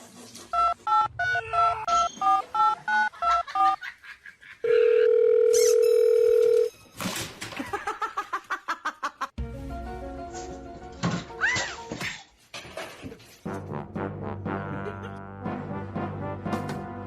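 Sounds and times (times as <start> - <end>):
steady telephone tone: 4.7 - 6.7.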